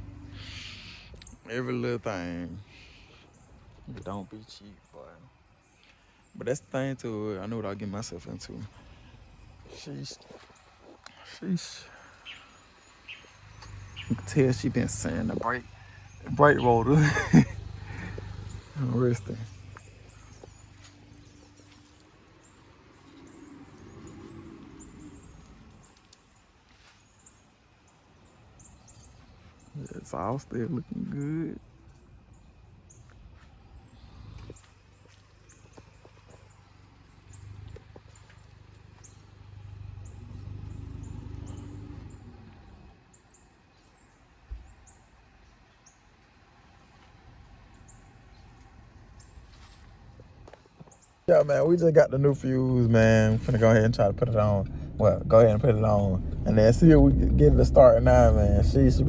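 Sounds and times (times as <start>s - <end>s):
outdoor background noise: 0.0s - 59.0s
small bird chirping: 7.4s - 46.1s
faint low hum: 51.3s - 59.0s
low rumble: 52.7s - 59.0s.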